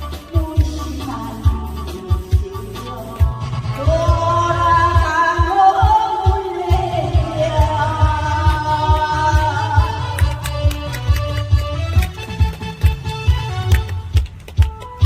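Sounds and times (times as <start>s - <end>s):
drum and bass beat: 0.0s - 15.0s
person singing long notes: 3.8s - 10.4s.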